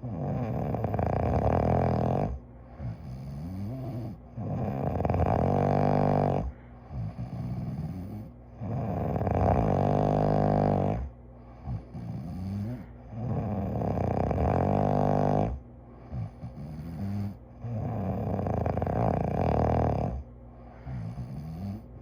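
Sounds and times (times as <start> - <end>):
person snoring: 0.0 - 21.9
soft breaths: 5.2 - 13.9, 14.5 - 18.4, 20.1 - 22.0.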